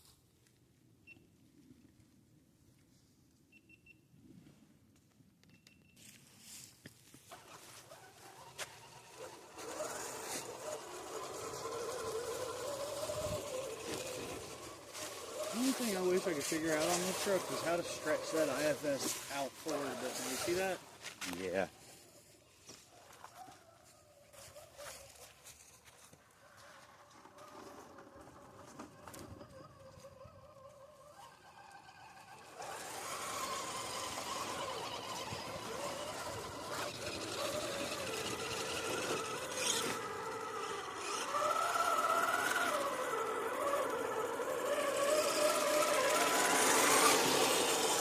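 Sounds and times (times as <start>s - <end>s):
rc car electric motor whining: 7.3s - 21.7s, 26.4s - 48.0s.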